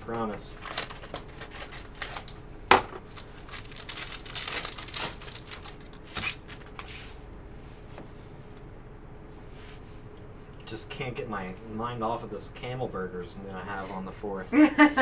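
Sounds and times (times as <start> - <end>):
card packaging rustling and crinkling: 0.0 - 7.3.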